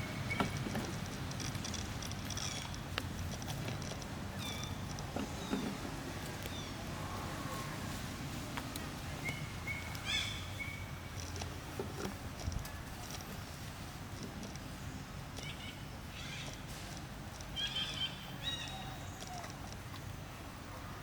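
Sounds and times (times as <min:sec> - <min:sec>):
light clicks and knocks: 0:00.1 - 0:06.6
monkey squeaking: 0:04.3 - 0:05.7.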